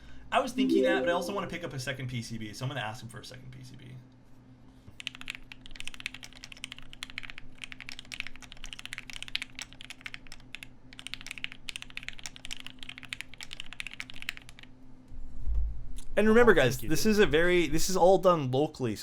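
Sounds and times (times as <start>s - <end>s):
mechanical keyboard typing: 5.0s - 14.7s.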